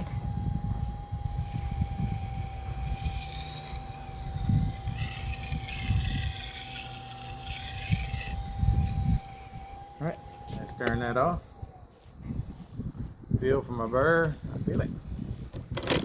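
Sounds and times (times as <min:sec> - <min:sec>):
knife sharpener motor whine: 0:00.0 - 0:12.5
blade scraping on grinder: 0:00.9 - 0:11.4.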